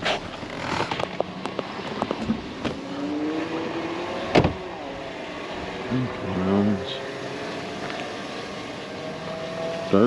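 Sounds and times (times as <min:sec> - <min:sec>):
vehicle engine pulling away: 0:00.5 - 0:10.0
loud thump: 0:04.3 - 0:04.6.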